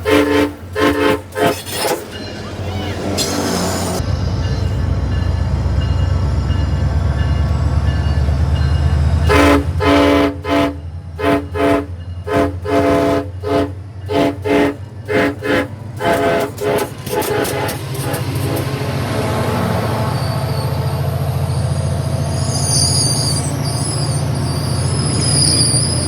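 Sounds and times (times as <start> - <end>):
train air horn blasts and toots: 0.0 - 2.2, 9.2 - 19.0
train rumble: 0.0 - 26.0.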